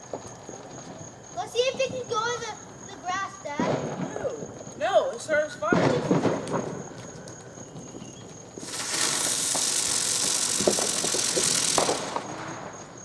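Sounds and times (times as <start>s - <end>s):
ground firework hissing: 6.2s - 13.0s.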